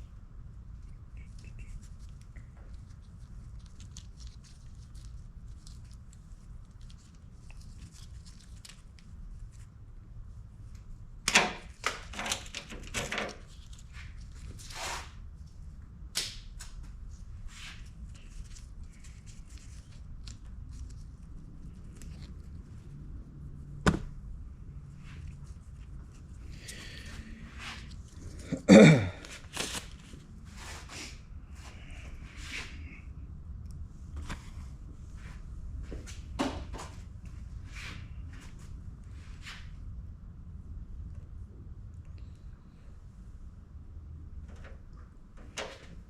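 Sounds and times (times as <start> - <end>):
low steady hum: 0.0 - 46.0
wiring rustling and clicking: 10.6 - 14.7.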